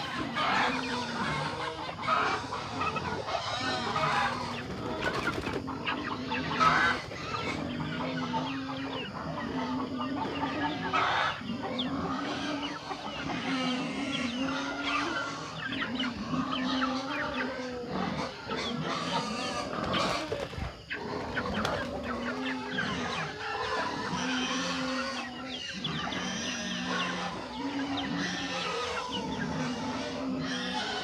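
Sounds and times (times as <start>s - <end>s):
chickens clucking and chirping: 0.0s - 31.0s.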